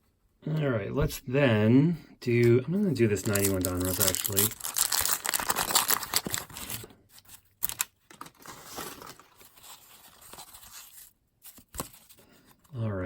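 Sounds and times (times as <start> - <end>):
wrapper tearing: 3.1 - 11.8
paper scratching and rustling: 3.2 - 12.3.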